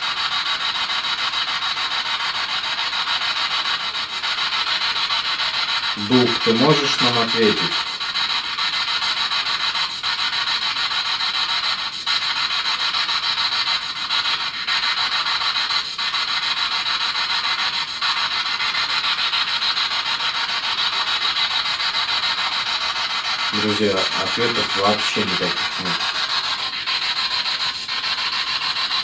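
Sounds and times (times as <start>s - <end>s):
electronic static hiss: 6.0s - 7.8s, 23.5s - 26.0s.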